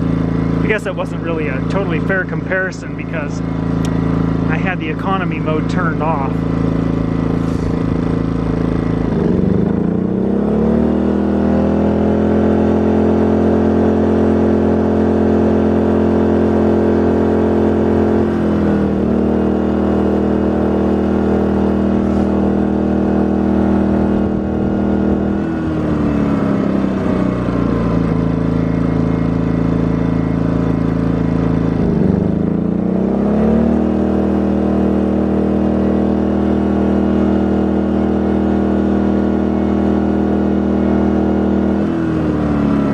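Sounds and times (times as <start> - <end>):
generator engine running: 0.0 - 42.9.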